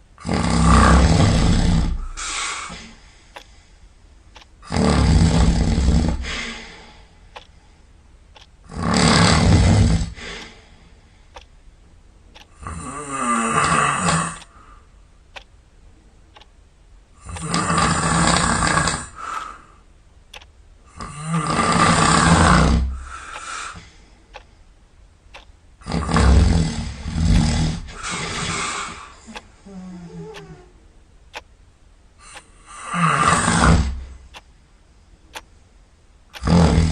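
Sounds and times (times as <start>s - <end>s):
loud snoring: 0.2s - 2.2s, 4.6s - 6.5s, 8.7s - 10.2s, 12.6s - 14.5s, 17.2s - 19.2s, 20.9s - 23.1s, 25.8s - 29.0s, 32.7s - 34.1s, 36.4s - 36.9s.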